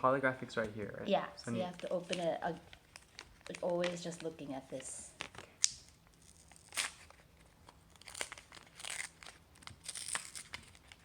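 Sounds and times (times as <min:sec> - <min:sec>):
wrapper crinkling and tearing: 0:01.6 - 0:11.0.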